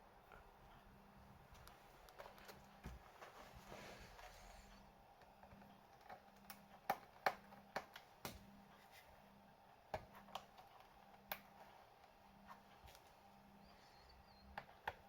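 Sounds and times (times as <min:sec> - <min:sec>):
laptop parts clicking: 0:05.2 - 0:08.6, 0:09.9 - 0:12.1.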